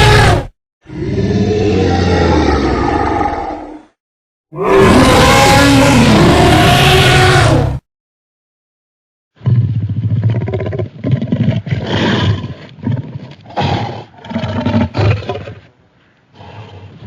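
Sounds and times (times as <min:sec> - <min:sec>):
deep growling dinosaur roars: 0:00.0 - 0:07.8.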